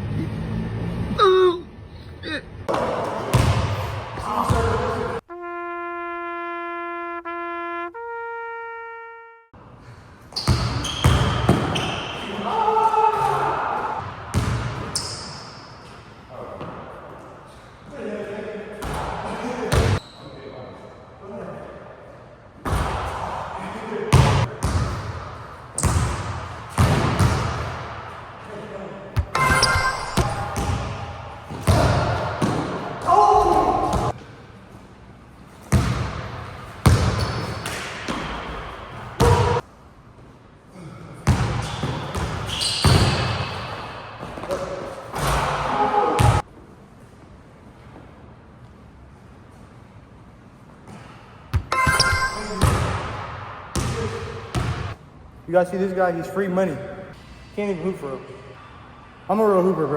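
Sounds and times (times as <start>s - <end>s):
basketball court noise: 2.2s - 5.3s, 10.3s - 17.2s, 18.8s - 20.3s, 22.6s - 34.4s, 35.6s - 39.7s, 40.8s - 46.5s, 50.8s - 55.0s
trumpet-like sound effect: 5.3s - 9.5s
short squeal: 10.4s - 12.4s, 14.9s - 15.8s, 41.6s - 43.6s.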